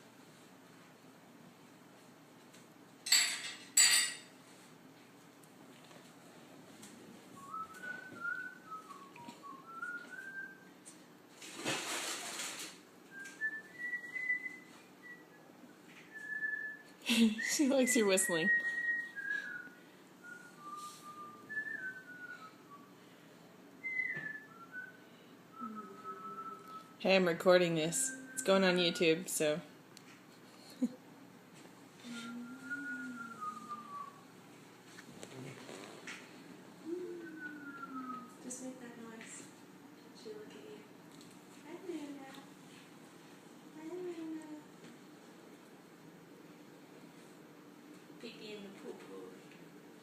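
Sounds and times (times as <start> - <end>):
person whistling a tune: 7.4 - 10.7, 13.1 - 15.4, 16.1 - 22.9, 23.8 - 27.0, 32.0 - 34.2, 36.8 - 38.4
person whistling short notes: 25.6 - 27.0, 32.0 - 34.2, 36.8 - 38.3.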